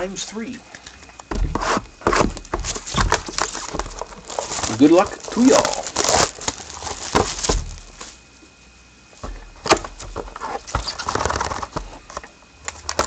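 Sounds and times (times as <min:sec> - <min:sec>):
cardboard box rustling and scraping: 0:01.3 - 0:08.2, 0:09.2 - 0:12.2
cardboard snapping: 0:01.5 - 0:08.2.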